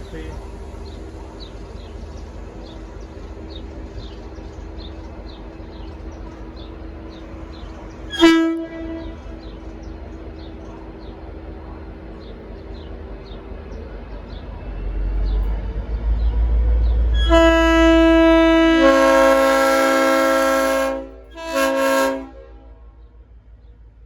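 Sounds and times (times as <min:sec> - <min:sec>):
train rumble: 0:00.0 - 0:24.0
locomotive air horn chord: 0:08.1 - 0:09.5, 0:17.1 - 0:22.9.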